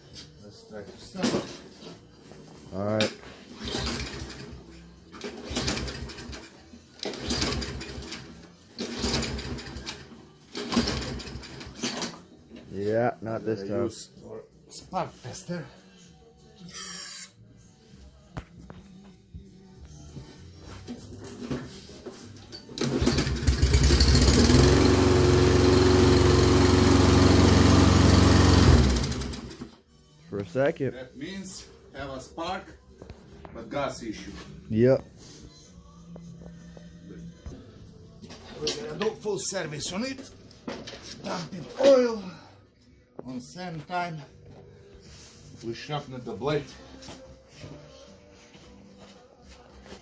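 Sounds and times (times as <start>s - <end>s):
mower engine pull-start cranking: 3.5s - 4.6s, 5.2s - 12.2s, 22.7s - 29.7s.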